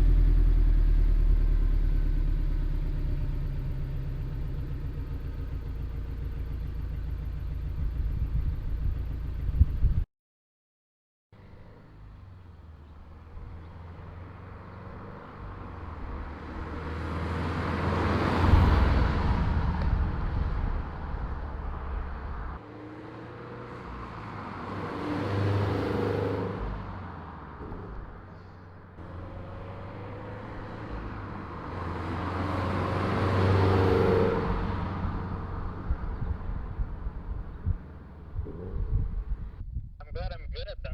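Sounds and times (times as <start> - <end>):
car driving past: 11.4 - 39.6.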